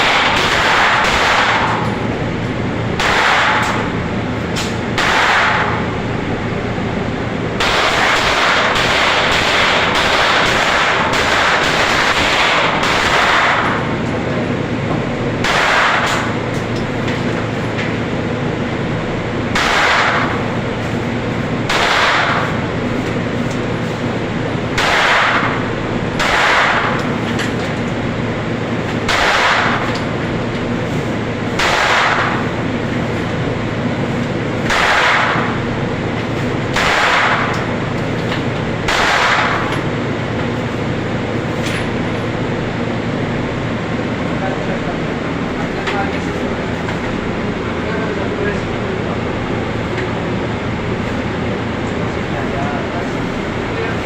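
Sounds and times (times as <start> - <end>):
gunshots: 0.0 - 1.8, 3.0 - 3.9, 5.0 - 5.8, 7.6 - 13.8, 15.4 - 16.3, 19.5 - 20.4, 21.7 - 22.5, 24.8 - 25.6, 26.2 - 27.0, 29.0 - 29.9, 31.6 - 32.4, 34.6 - 35.6, 36.7 - 37.5, 38.8 - 39.7
steady low hum: 0.0 - 54.0.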